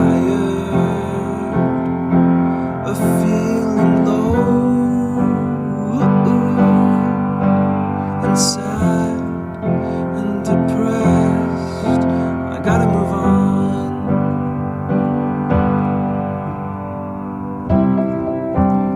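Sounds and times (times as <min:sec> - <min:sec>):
piano playing chords: 0:00.0 - 0:18.9.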